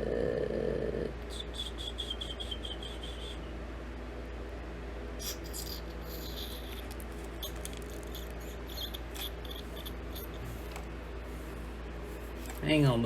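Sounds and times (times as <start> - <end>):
low electrical hum: 0.0 - 13.0
small objects clicking and rustling: 6.4 - 10.8.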